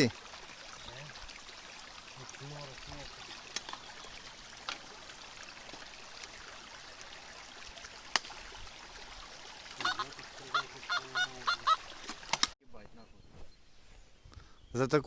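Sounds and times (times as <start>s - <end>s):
creek water running: 0.0s - 12.8s
short pitched calls: 9.8s - 12.0s.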